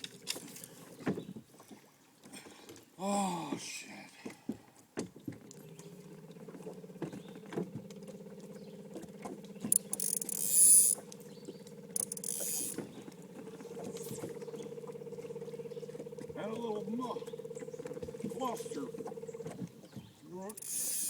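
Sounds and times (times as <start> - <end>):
fishing reel cranking and clicking: 9.0 - 16.4, 20.4 - 21.0
short hissing bursts: 20.6 - 21.0.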